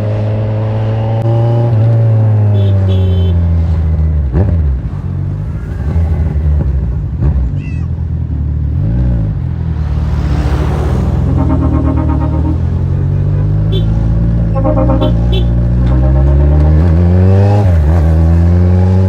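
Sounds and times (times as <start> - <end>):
motorcycle engine running: 10.7 - 19.0
throttle blips: 11.1 - 16.6.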